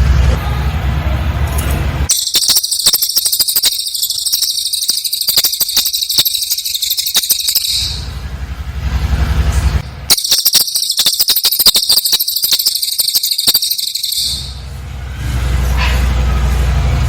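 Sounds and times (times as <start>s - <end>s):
bird high-pitched trill: 2.1s - 8.2s, 9.9s - 14.8s.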